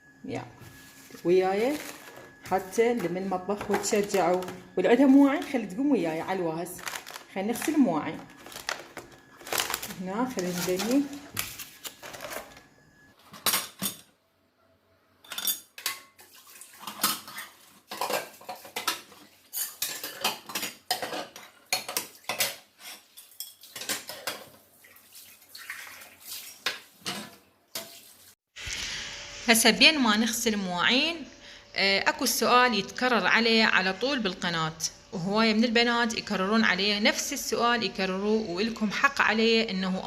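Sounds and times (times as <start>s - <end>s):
dishes and cutlery clinking: 15.2s - 24.6s.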